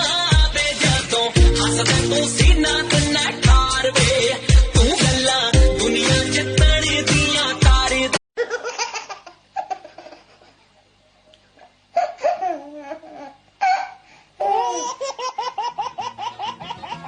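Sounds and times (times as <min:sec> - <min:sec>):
baby laughing: 0:08.4 - 0:10.6, 0:12.0 - 0:17.0.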